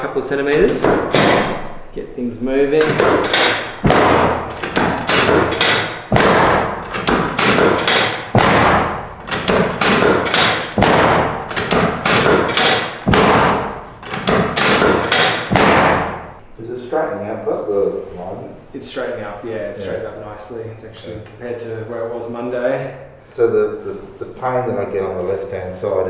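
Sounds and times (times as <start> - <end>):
sharp knocks of table dropping: 2.8 - 16.4.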